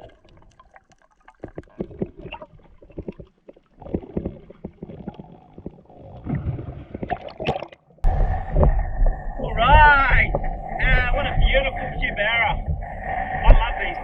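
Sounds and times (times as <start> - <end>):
underwater clicks and crackles: 0.0 - 11.0
underwater bubbling gurgles: 0.0 - 14.0
rumble and hiss of wind and water: 8.1 - 14.0.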